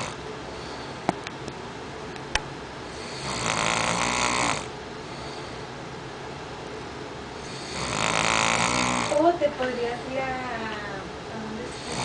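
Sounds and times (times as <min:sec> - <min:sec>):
person snoring: 0:00.0 - 0:00.2, 0:02.9 - 0:04.7, 0:07.4 - 0:09.2, 0:11.7 - 0:12.0.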